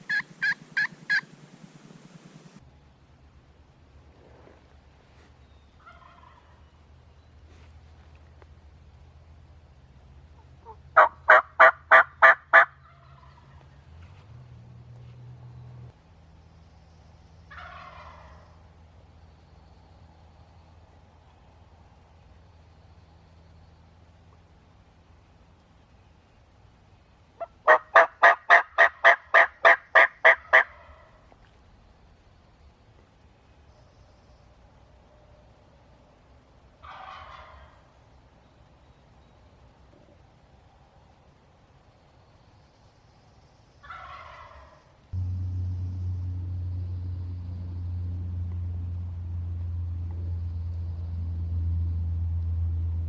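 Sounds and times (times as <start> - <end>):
turkey yelping: 0.0 - 1.3, 5.9 - 6.6, 10.4 - 13.4, 17.5 - 18.4, 27.4 - 31.1, 36.8 - 37.8, 43.8 - 44.8
steady low drone: 45.1 - 53.0.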